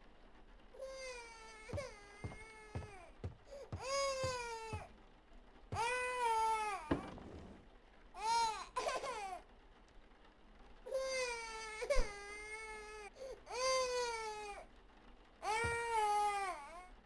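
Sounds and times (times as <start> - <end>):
infant crying: 0.8 - 4.9, 5.8 - 6.9, 8.2 - 9.4, 10.9 - 14.6, 15.4 - 17.0.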